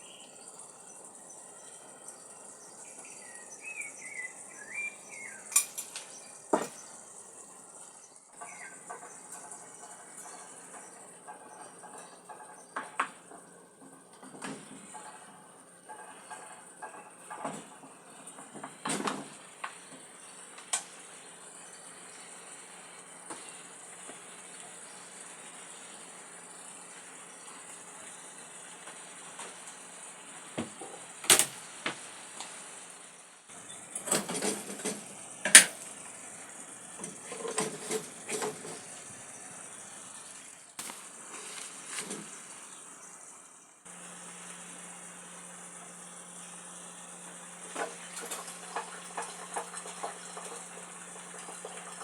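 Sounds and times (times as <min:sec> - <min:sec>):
steady hiss: 0:00.0 - 0:52.0
dishes and utensils clattering: 0:05.5 - 0:06.8, 0:33.7 - 0:35.8, 0:37.0 - 0:38.9.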